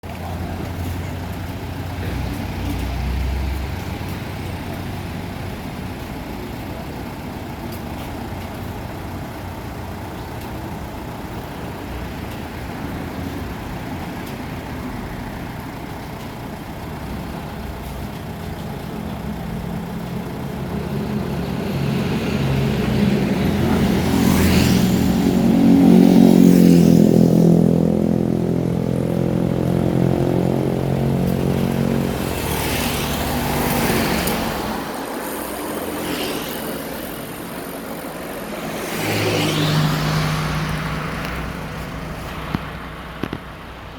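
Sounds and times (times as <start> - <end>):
vehicle engine passing by: 19.3 - 43.9.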